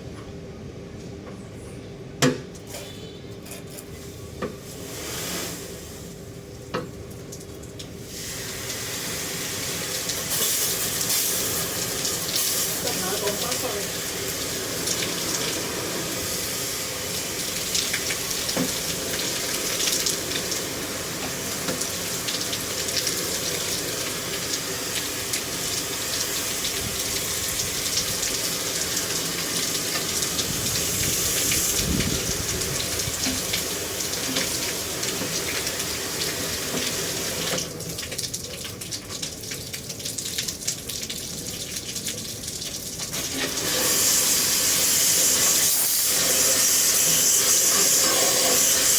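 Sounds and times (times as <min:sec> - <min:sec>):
water spraying: 0:04.6 - 0:06.2, 0:08.0 - 0:38.3, 0:43.0 - 0:48.9.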